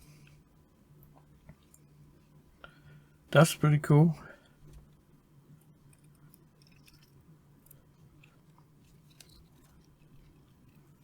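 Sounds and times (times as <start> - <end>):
faint low hum: 0.0 - 11.0
faint small clicks: 1.0 - 1.9.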